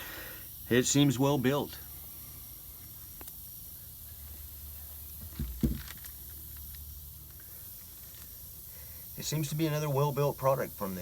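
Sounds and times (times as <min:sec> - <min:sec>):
steady low hum: 0:00.0 - 0:11.0
dull bump: 0:05.2 - 0:05.9
handling noise of scope: 0:05.2 - 0:08.4.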